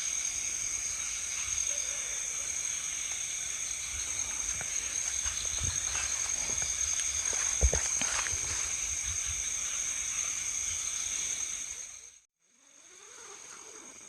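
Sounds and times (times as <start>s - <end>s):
night insects chorus: 0.0s - 14.0s.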